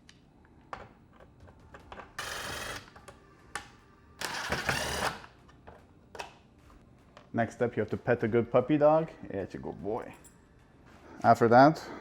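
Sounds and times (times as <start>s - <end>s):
powered screwdriver running: 4.2s - 5.3s.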